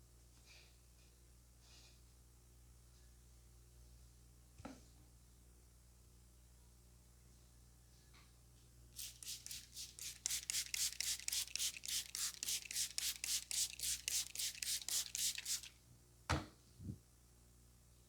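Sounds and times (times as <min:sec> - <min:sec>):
hands rubbing head: 0:09.0 - 0:15.7.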